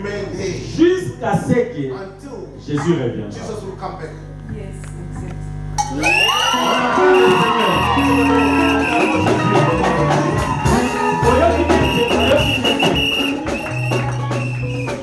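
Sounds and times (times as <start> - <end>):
music with held bass notes: 6.5 - 15.0.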